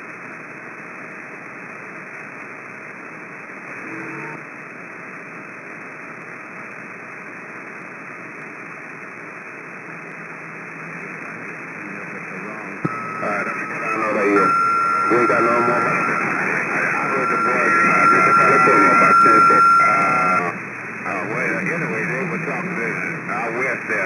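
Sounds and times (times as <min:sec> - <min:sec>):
radio static hiss: 0:09.0 - 0:24.0
faint brief tone: 0:12.9 - 0:20.6.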